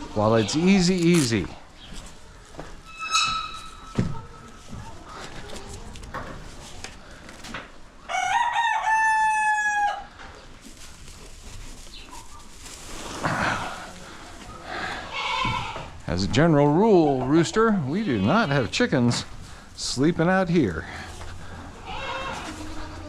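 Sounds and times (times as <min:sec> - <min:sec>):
rooster crowing: 0:08.1 - 0:10.1.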